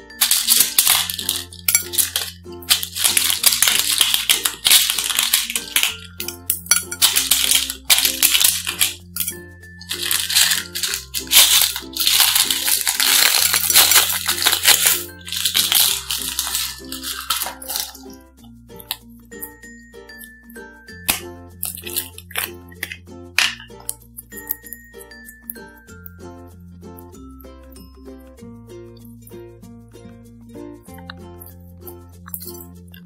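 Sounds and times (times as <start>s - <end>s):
upbeat background music: 0.0s - 33.0s
beads rattling in slime: 0.2s - 18.2s, 21.1s - 22.5s.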